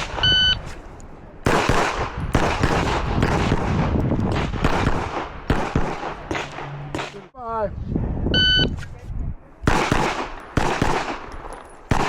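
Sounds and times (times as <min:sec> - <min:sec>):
start timer beep: 0:00.2 - 0:00.6, 0:08.4 - 0:08.7
pistol shots: 0:01.4 - 0:07.2, 0:09.7 - 0:12.0.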